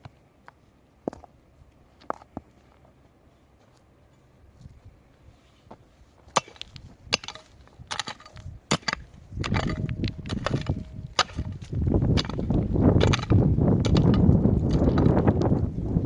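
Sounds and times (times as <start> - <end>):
low rumbling noise: 3.1 - 16.0.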